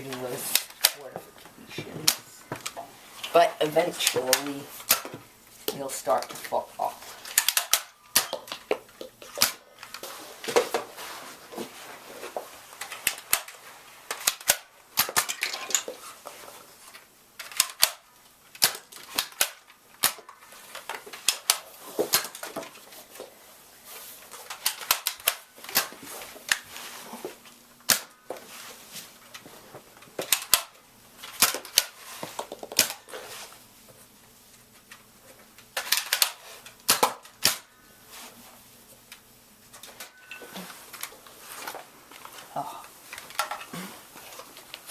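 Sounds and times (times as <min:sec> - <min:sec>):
toy blasters popping shots: 0:07.3 - 0:09.6.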